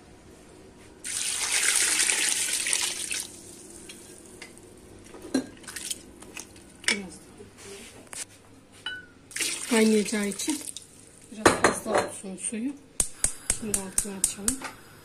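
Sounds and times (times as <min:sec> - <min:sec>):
water poured into pot: 0:01.0 - 0:04.0, 0:09.3 - 0:11.0.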